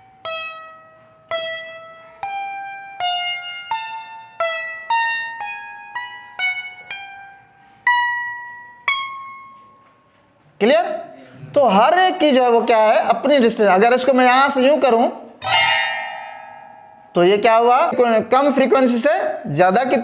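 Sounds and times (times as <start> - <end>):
plucked string notes: 0.0 - 9.8, 15.4 - 18.0.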